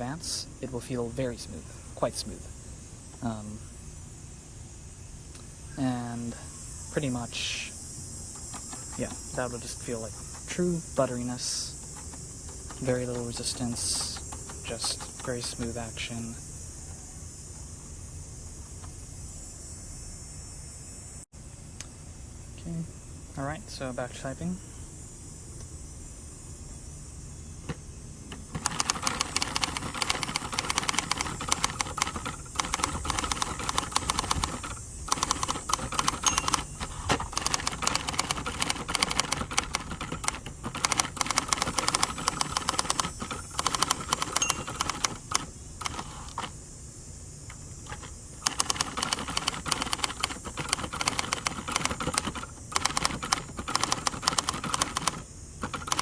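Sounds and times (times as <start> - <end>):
manual typewriter typing: 8.3 - 16.4, 28.3 - 46.5, 47.5 - 56.0.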